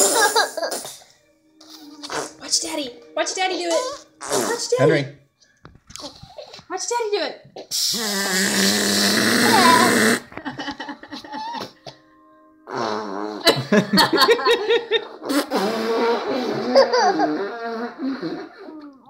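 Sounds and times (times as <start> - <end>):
blown raspberry: 1.7 - 2.5, 4.2 - 4.8, 7.7 - 10.4, 12.7 - 13.6, 15.2 - 18.6
laughter and giggling: 10.3 - 11.9, 13.4 - 15.2, 16.0 - 18.6.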